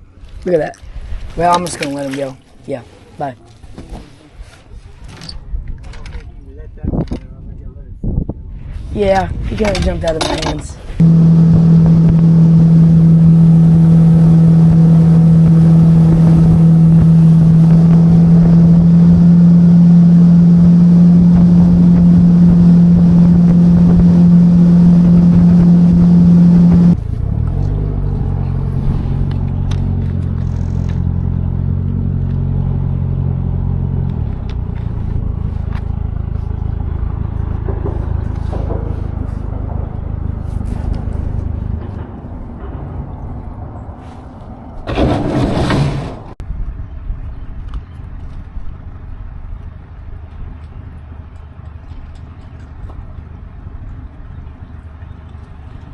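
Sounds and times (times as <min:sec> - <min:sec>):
low rumble: 0:06.7 - 0:47.5
engine running: 0:09.8 - 0:46.4.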